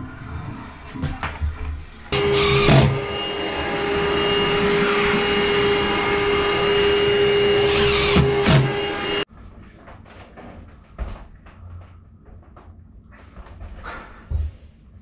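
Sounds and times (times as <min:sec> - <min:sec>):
motor running with whine: 0:02.1 - 0:09.3.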